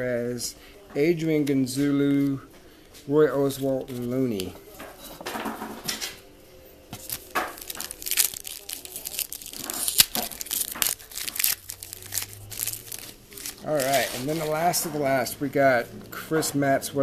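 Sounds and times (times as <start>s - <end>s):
wrapper tearing and crinkling: 7.0s - 14.8s.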